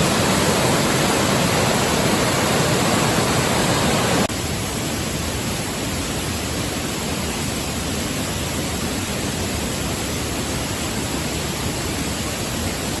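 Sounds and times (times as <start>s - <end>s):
stream water rushing: 0.0s - 13.0s.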